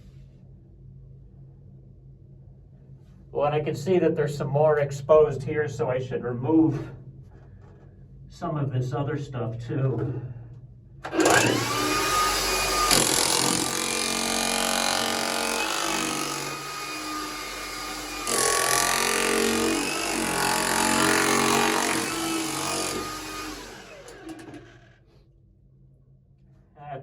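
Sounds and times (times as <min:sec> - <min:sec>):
demolition hammer chiselling rock: 0:11.1 - 0:24.8.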